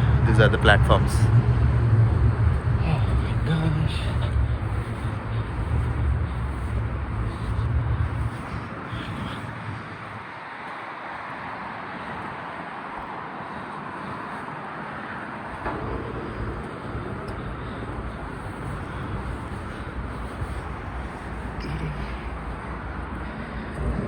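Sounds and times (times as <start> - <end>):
deep rumble: 0.0 - 10.3, 15.4 - 24.0
traffic noise: 0.0 - 24.0.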